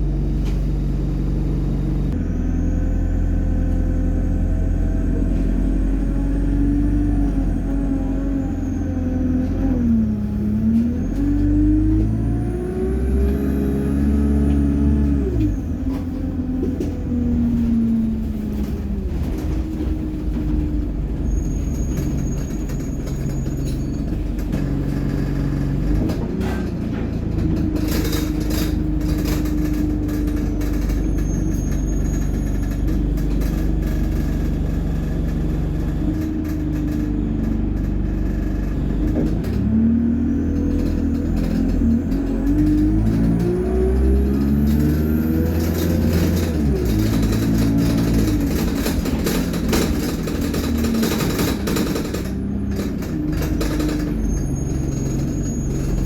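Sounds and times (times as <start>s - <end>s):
bus diesel engine shifting gears: 0.0s - 56.0s.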